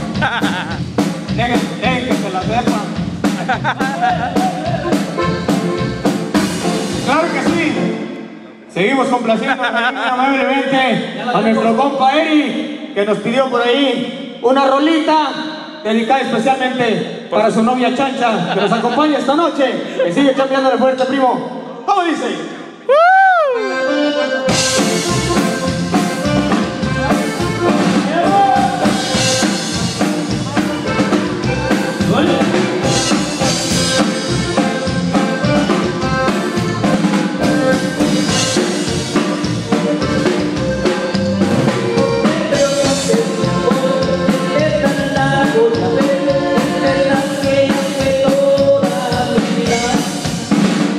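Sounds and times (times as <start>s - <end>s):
drum-kit beat: 0.0s - 7.9s, 24.5s - 50.9s
song over sound system: 0.0s - 8.8s, 23.6s - 50.9s
person singing: 3.8s - 5.2s, 30.3s - 34.3s, 39.7s - 50.3s.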